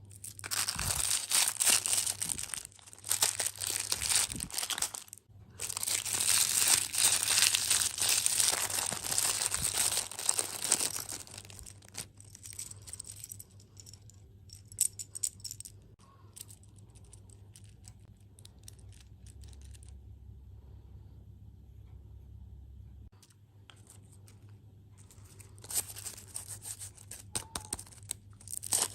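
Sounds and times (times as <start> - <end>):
plastic packaging crinkling: 0.0 - 13.0, 25.3 - 28.9.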